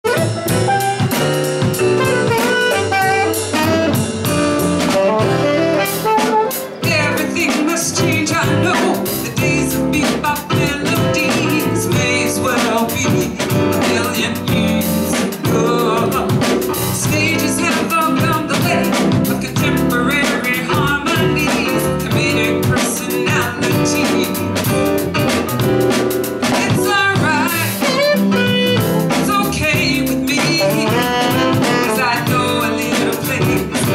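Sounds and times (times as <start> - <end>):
horns: 0.0 - 7.9, 27.8 - 33.9
drum kit: 0.0 - 33.9
jazz-blues band playing: 0.0 - 33.9.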